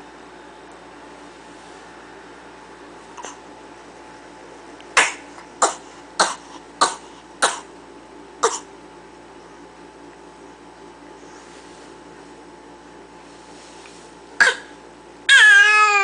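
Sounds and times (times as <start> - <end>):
person coughing: 5.0 - 7.7, 8.4 - 8.7, 14.4 - 14.8.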